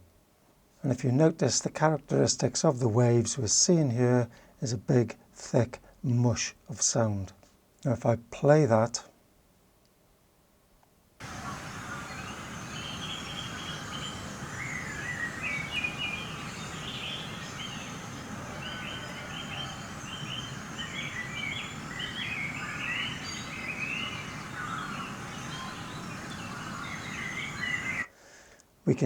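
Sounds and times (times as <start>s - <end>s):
distant sheep calling: 11.2s - 28.1s
geese calling: 11.2s - 28.1s
songbirds singing: 11.2s - 28.1s
wind in tree foliage: 11.2s - 28.1s.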